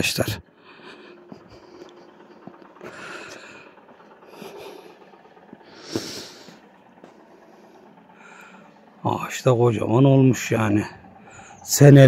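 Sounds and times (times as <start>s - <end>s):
person breathing through nose: 5.6s - 6.6s.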